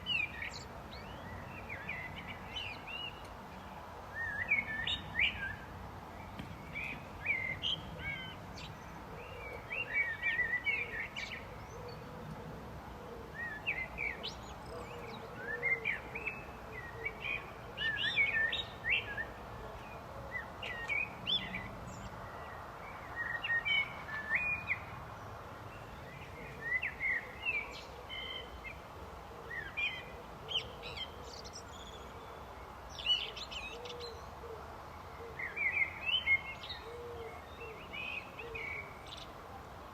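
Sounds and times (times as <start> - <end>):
steady background noise: 0.0 - 39.9
blackbird singing: 4.1 - 12.1, 13.3 - 24.8, 25.8 - 28.8, 29.5 - 34.3, 35.3 - 39.3.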